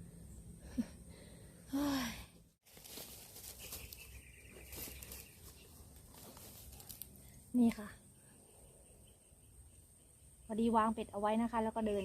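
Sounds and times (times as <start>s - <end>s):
outdoor background: 0.0s - 12.0s
woman sighing: 1.7s - 2.4s.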